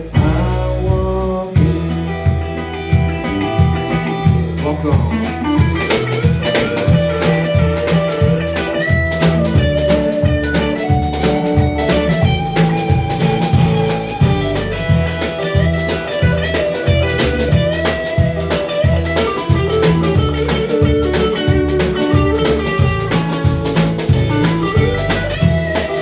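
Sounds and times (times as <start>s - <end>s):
blues band playing: 0.0s - 26.0s
guitar lead with bent notes: 0.0s - 26.0s.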